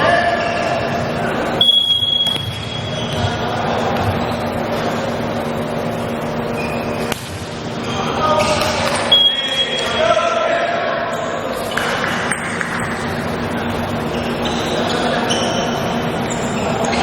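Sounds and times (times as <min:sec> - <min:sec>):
crowd murmuring in a gym: 0:00.0 - 0:17.0
referee's whistle: 0:01.6 - 0:03.3, 0:09.0 - 0:10.2.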